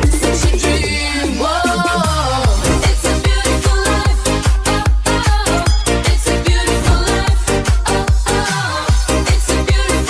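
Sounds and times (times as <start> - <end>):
kick drum beat: 6.5 - 8.3.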